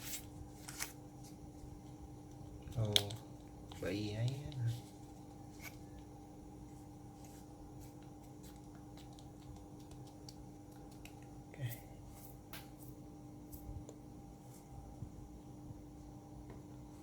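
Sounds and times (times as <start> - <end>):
steady low hum: 0.0 - 17.0
hands clicking and tapping on laptop: 8.0 - 11.3.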